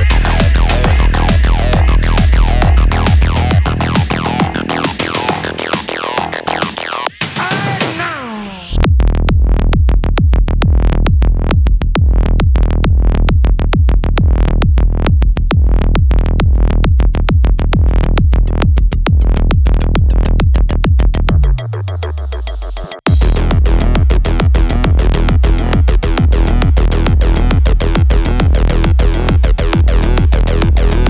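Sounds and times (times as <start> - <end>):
sliding bass note: 0.0 - 7.1, 8.1 - 22.4, 23.1 - 31.0
electronic dance music: 0.0 - 8.9, 19.0 - 31.0
rising sweep: 0.0 - 8.9.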